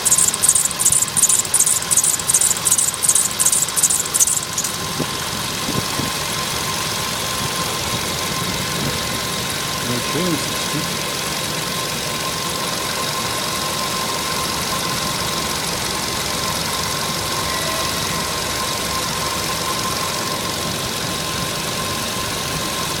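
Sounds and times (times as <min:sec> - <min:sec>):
belt whistle: 0:00.0 - 0:04.8
car engine idling: 0:00.0 - 0:23.0.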